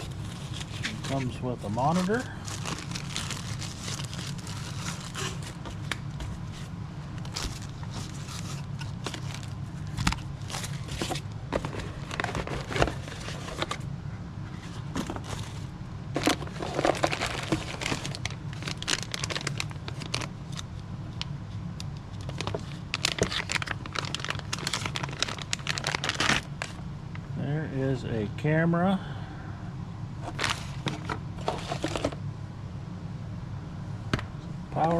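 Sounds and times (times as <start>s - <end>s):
plastic packaging crinkling: 0.0s - 13.8s, 15.0s - 20.8s, 22.1s - 26.8s, 30.2s - 32.2s
steady low hum: 0.0s - 34.9s.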